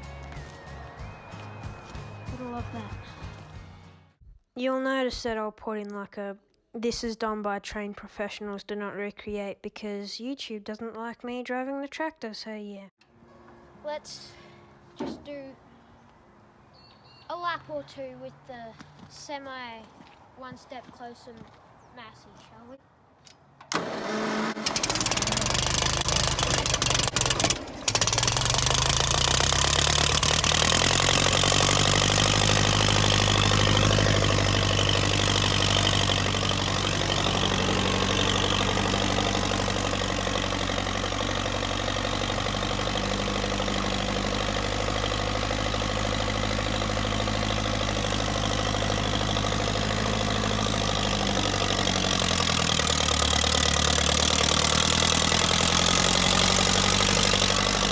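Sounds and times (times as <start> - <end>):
tractor engine running: 0.0 - 4.2, 23.6 - 57.9.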